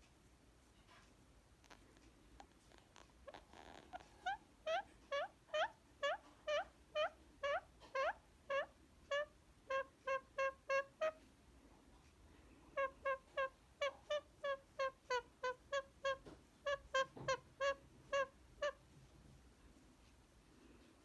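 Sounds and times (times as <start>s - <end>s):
parakeet short pitched calls: 3.3s - 11.2s, 12.8s - 18.8s.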